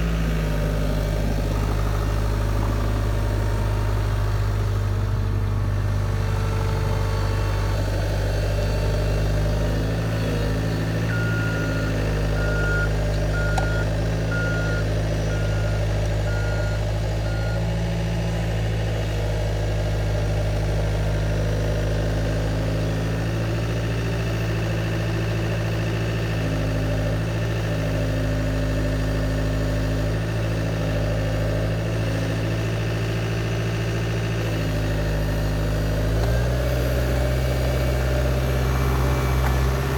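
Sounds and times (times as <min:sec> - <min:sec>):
diesel engine running: 0:00.0 - 0:39.9
reversing alarm beeping: 0:11.0 - 0:17.6.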